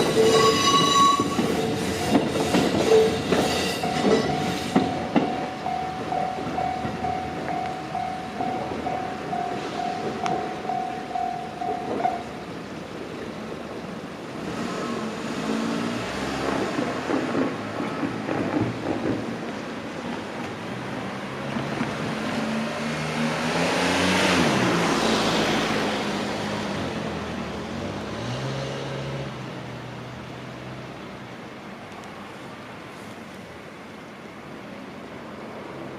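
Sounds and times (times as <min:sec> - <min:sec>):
vehicle passing by: 0:21.6 - 0:29.3.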